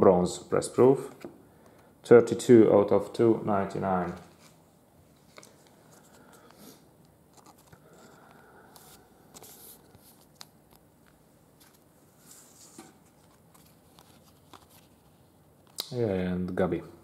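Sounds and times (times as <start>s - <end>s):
trading cards rustling and clicking: 5.2s - 6.6s, 7.3s - 11.9s, 12.6s - 15.9s.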